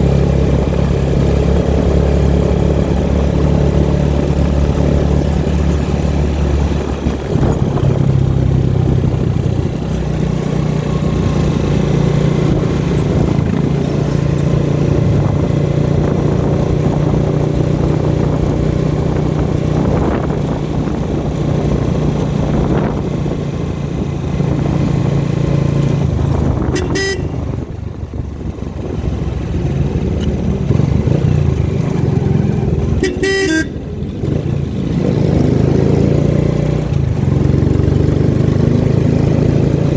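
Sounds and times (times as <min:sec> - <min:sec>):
vehicle engine running: 0:00.0 - 0:39.9
horn tooting: 0:26.6 - 0:27.7, 0:32.2 - 0:34.0.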